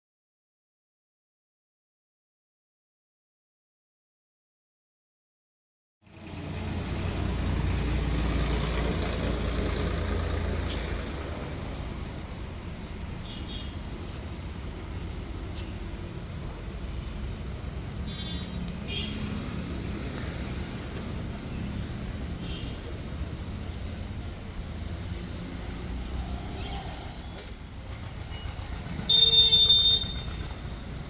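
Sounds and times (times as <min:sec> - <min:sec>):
low traffic rumble: 0:06.0 - 0:31.0.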